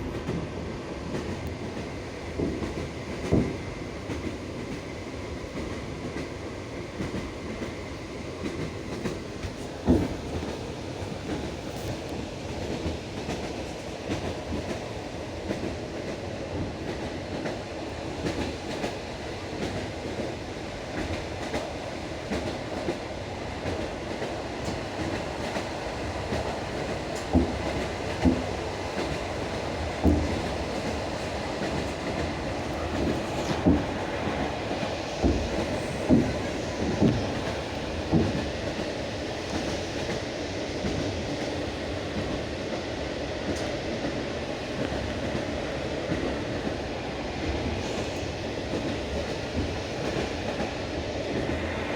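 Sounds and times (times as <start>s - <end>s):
train wheels rumbling on rails: 0.0s - 51.9s
wheels knocking on rail joints: 30.0s - 31.0s, 31.6s - 38.5s.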